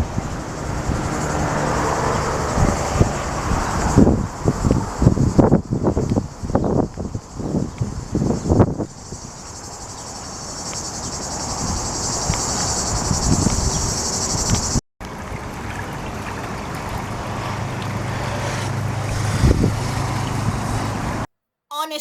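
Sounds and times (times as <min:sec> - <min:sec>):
cicadas buzzing: 0:00.0 - 0:14.8
outdoor background noise: 0:00.0 - 0:22.0.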